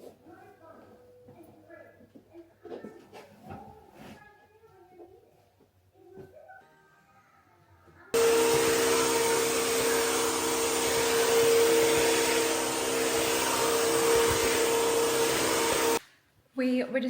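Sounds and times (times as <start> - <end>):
appliance motor whining: 8.2 - 16.0.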